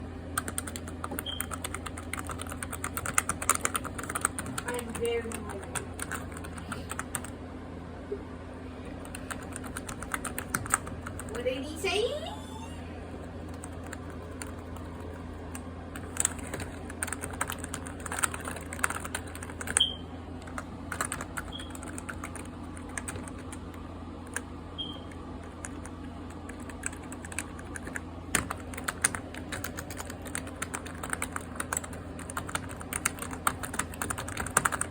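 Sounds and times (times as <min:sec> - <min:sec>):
steady low hum: 0:00.0 - 0:34.9.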